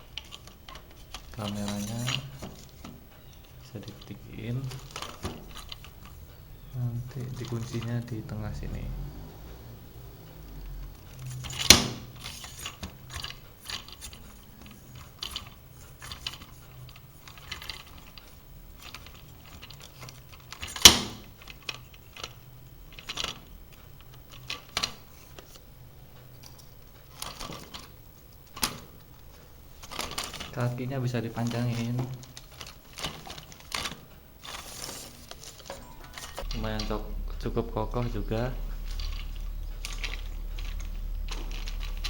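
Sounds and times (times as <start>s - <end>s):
tripod clicks and rattles: 0.0s - 8.1s.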